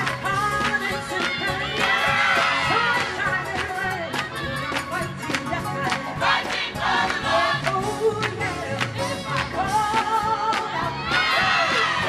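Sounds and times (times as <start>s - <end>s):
percussive beat: 0.0s - 12.0s
gospel choir singing: 0.4s - 3.6s, 5.9s - 12.0s.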